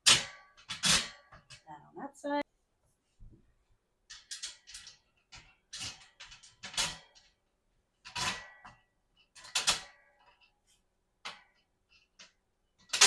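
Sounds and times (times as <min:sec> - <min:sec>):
parts scraping and clattering: 0:04.1 - 0:07.4.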